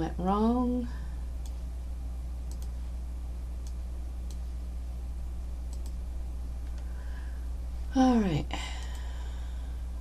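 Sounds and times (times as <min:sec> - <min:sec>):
steady low hum: 0:00.0 - 0:10.0
computer clicks: 0:01.4 - 0:01.6, 0:02.4 - 0:02.8, 0:03.6 - 0:04.5, 0:05.6 - 0:06.0.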